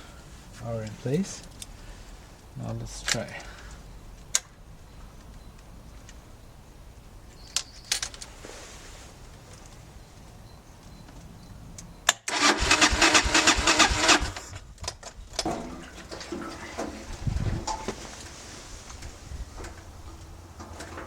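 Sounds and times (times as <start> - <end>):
electric starter cranking engine: 12.3 - 14.6.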